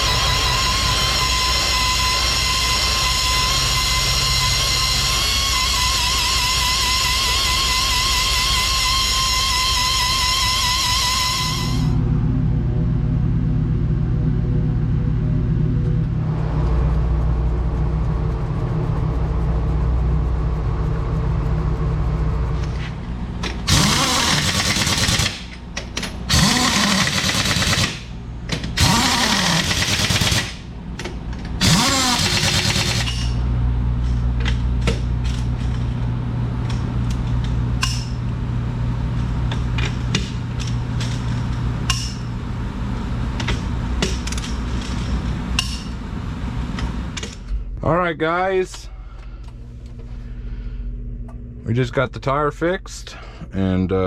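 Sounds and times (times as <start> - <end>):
pneumatic impact wrench: 0.0 - 12.0, 23.5 - 33.4
low machine hum: 0.0 - 54.0.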